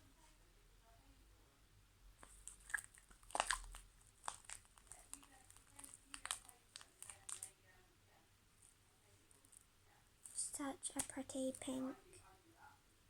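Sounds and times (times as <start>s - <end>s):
slime crackling pops: 2.2s - 7.5s.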